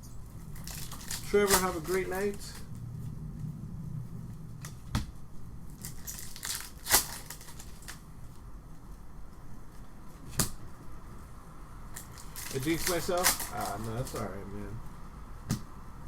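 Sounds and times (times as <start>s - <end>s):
foil wrappers crinkling and tearing: 0.4s - 2.7s, 5.7s - 8.0s, 12.0s - 14.3s
sharp snap: 10.3s - 10.7s.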